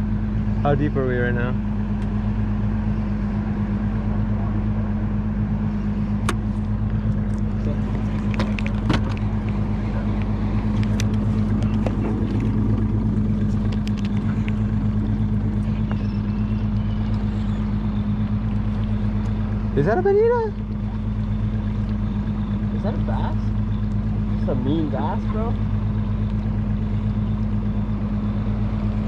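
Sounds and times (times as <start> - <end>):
boat engine droning: 0.0 - 29.0
sharp clicks and knocks: 7.2 - 9.6.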